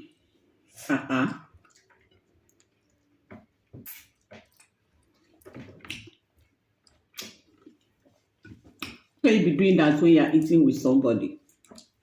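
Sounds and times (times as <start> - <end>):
wet eating mouth noises: 0.9 - 9.2.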